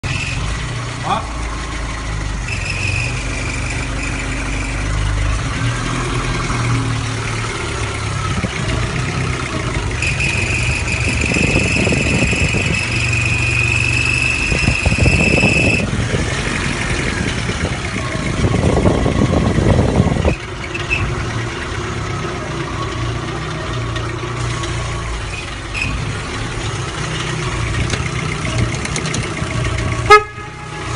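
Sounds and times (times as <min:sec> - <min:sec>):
high-pitched squeal: 0:00.0 - 0:00.7, 0:02.4 - 0:07.4, 0:09.0 - 0:21.4
car engine running: 0:00.0 - 0:30.9.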